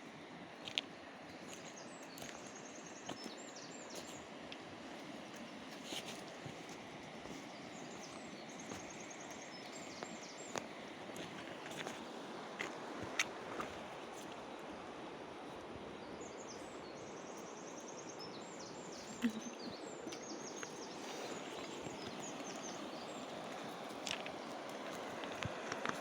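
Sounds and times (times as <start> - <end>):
river water rushing: 18.8 - 26.0.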